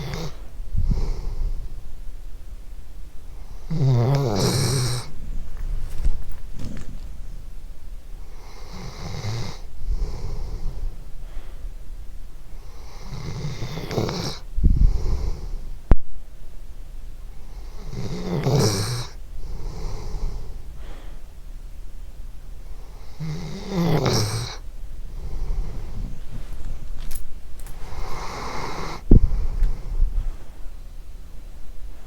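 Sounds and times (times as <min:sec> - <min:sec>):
dog snoring: 0:00.0 - 0:01.8, 0:03.3 - 0:07.4, 0:08.2 - 0:11.6, 0:12.5 - 0:15.7, 0:17.3 - 0:21.2, 0:22.7 - 0:26.9, 0:27.6 - 0:30.5.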